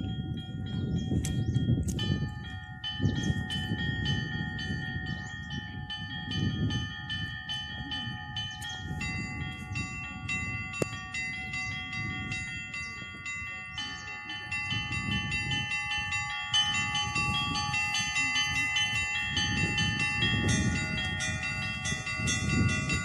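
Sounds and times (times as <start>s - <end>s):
chapel bells ringing: 0.0s - 23.0s
higher bells ringing: 0.0s - 23.0s.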